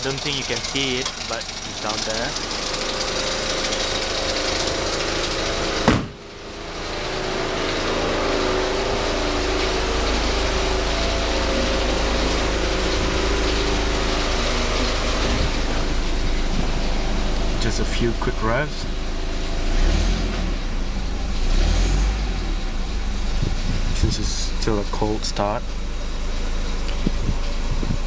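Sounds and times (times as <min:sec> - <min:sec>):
car engine idling: 0:00.0 - 0:28.0
sharp knock: 0:05.9 - 0:06.2.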